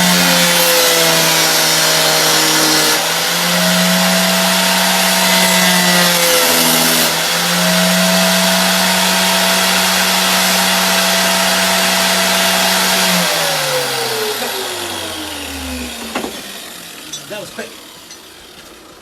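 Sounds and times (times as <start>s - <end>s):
electric grinder humming: 0.0s - 19.0s
steel being ground: 0.0s - 19.0s.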